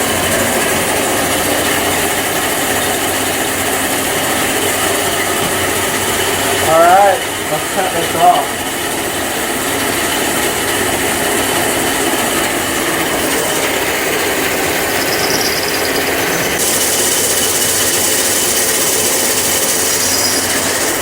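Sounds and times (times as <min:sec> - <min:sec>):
metal lathe cutting steel: 0:00.0 - 0:21.0
high squeal: 0:13.1 - 0:21.0.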